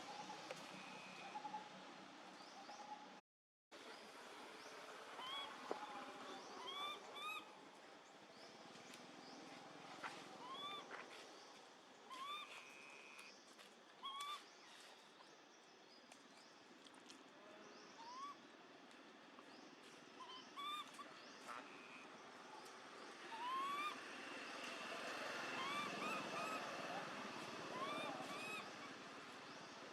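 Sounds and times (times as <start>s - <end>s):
baby monkey distress cries: 27.7s - 28.8s.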